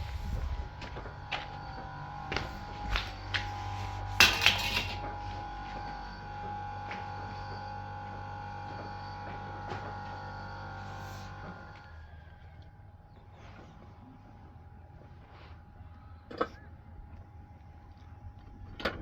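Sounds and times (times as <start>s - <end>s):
steady hum: 0.0s - 19.0s
objects clattering: 2.3s - 5.2s.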